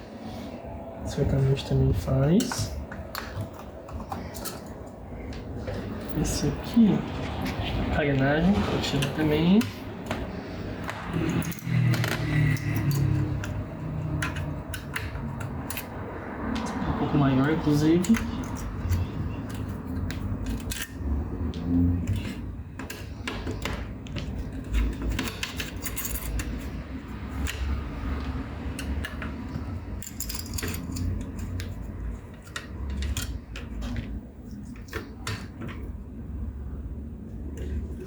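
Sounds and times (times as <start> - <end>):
screws and screwdriver clinking: 11.2 - 15.9, 24.6 - 27.7, 28.7 - 34.2.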